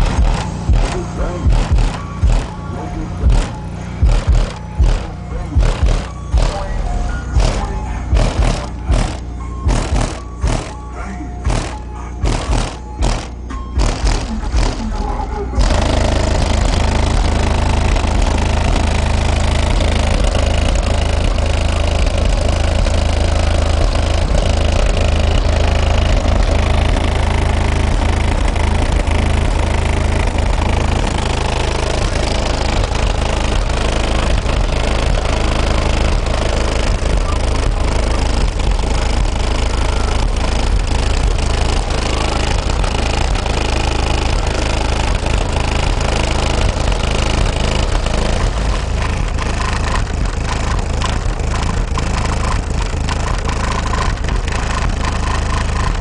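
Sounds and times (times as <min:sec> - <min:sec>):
buzzing and rattling: 0:00.0 - 0:56.0
deep subwoofer bass: 0:00.0 - 0:56.0.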